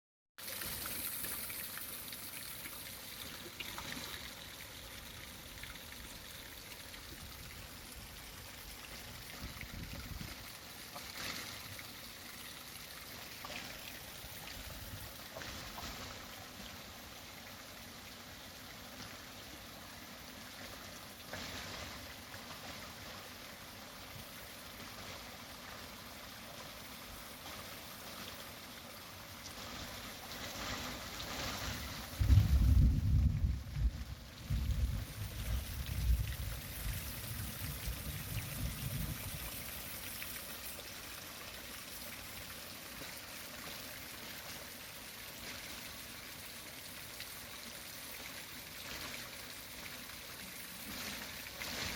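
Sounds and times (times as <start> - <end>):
rain spatters: 29.3 - 44.5, 45.2 - 51.9
rain falling: 29.6 - 40.8.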